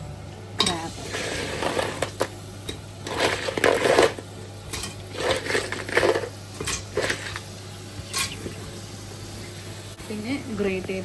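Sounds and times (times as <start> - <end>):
crab pieces clattering in metal pot: 3.0 - 7.4, 8.1 - 8.5.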